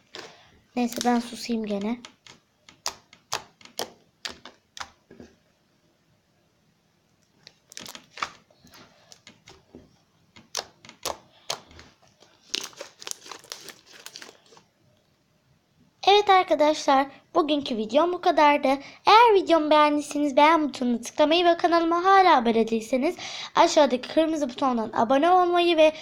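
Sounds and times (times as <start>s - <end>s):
slime crackling and squelching: 0.0s - 5.1s, 7.4s - 9.7s, 10.4s - 14.7s.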